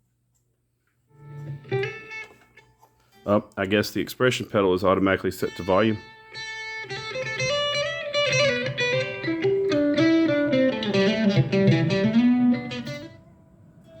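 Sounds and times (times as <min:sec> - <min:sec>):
electric guitar melody: 0:01.1 - 0:02.7, 0:05.5 - 0:14.0.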